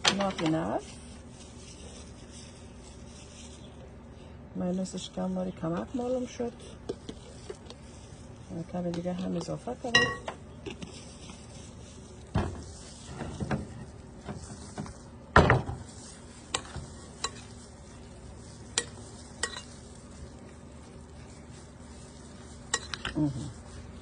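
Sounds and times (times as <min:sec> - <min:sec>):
spoon stirring mayonnaise: 0:05.7 - 0:09.8, 0:15.9 - 0:24.0.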